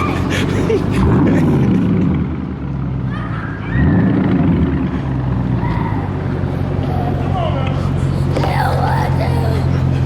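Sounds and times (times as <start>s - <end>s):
car engine revving: 0.0s - 9.4s.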